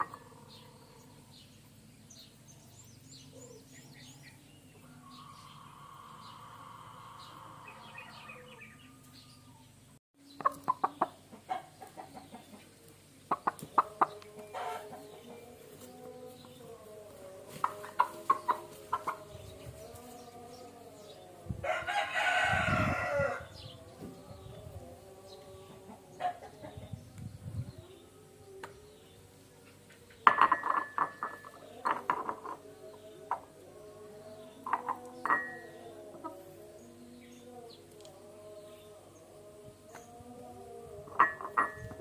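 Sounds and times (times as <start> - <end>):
chickens clucking: 0.0 - 1.3, 4.7 - 9.2, 10.2 - 21.1, 22.2 - 27.2, 29.4 - 36.9
rooster crowing: 4.8 - 9.6, 21.6 - 23.6.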